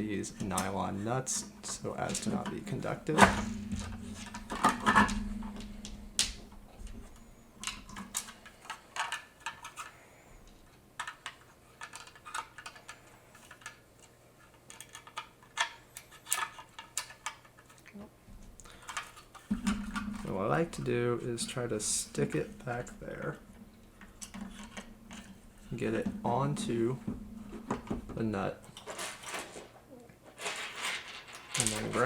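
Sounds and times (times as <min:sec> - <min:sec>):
screw and nut rattling on plastic: 0:01.6 - 0:09.9, 0:11.0 - 0:17.8, 0:22.7 - 0:26.0, 0:30.4 - 0:32.0.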